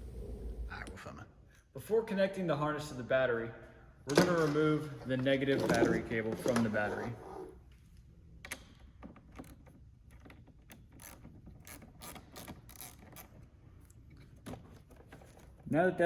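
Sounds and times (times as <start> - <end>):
ratchet wrench clicking: 11.0 - 13.4.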